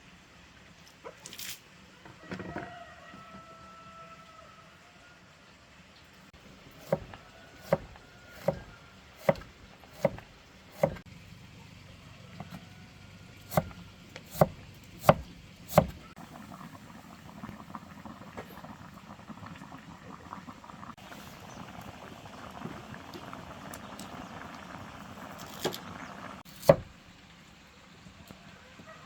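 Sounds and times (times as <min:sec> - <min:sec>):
knife chopping on cutting board: 0:06.8 - 0:11.0, 0:13.5 - 0:16.0, 0:26.6 - 0:26.9.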